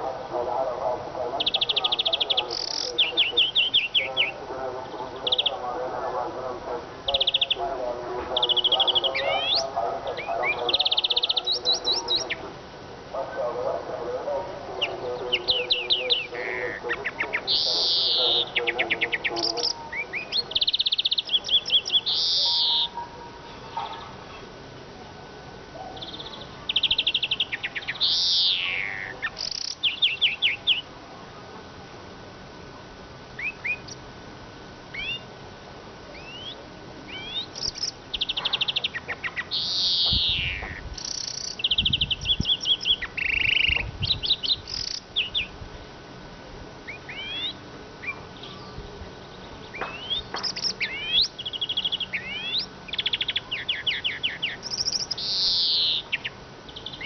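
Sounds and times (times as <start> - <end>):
bird twittering song: 1.4 - 5.7, 7.1 - 7.7, 8.3 - 12.5, 14.8 - 23.1, 25.8 - 30.9, 33.4 - 34.0, 34.9 - 35.3, 36.1 - 45.6, 46.9 - 57.0.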